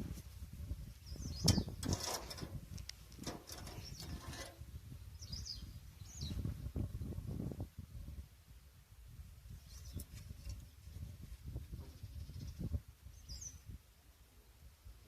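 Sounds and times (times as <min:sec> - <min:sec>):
bird chirps: 0:01.0 - 0:01.8, 0:05.1 - 0:06.4, 0:12.0 - 0:13.6
hand tools clicking and scraping: 0:01.5 - 0:04.6.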